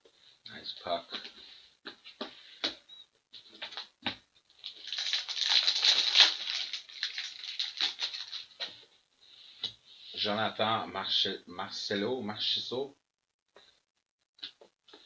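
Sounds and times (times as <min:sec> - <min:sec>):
plastic packaging crinkling: 0:04.6 - 0:08.8.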